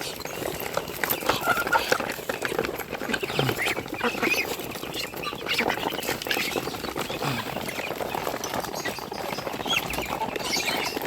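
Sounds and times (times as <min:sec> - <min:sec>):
chickens clucking: 0:00.0 - 0:11.0
ducks quacking: 0:01.2 - 0:02.2, 0:03.0 - 0:08.0.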